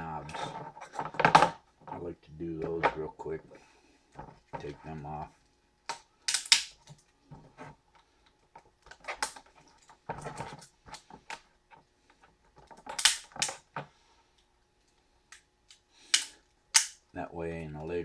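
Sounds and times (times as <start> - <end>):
plastic knobs snapping off: 6.3 - 6.9, 12.9 - 13.6.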